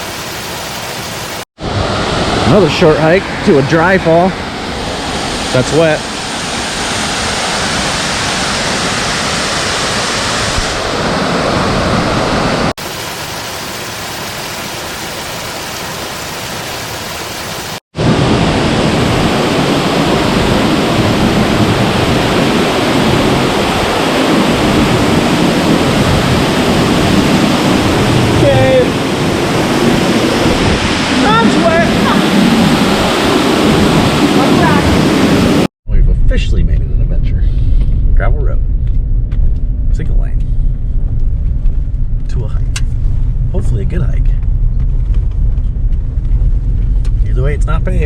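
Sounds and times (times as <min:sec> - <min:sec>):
waterfall rushing: 0:00.0 - 0:04.2, 0:04.9 - 0:35.7.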